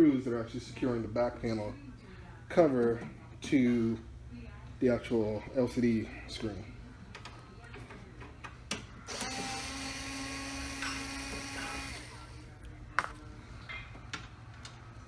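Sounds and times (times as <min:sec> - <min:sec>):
electric screwdriver running: 0:09.1 - 0:12.3.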